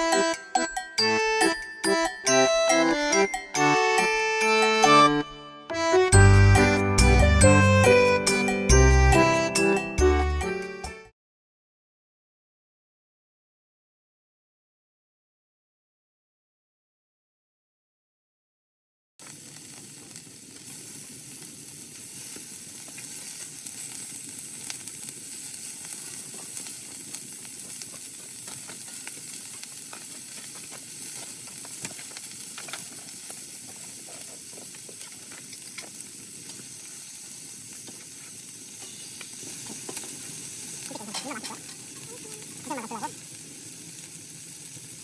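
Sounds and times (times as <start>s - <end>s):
food sizzling in a pan: 19.2s - 45.0s
small pops and crackles: 19.2s - 45.0s.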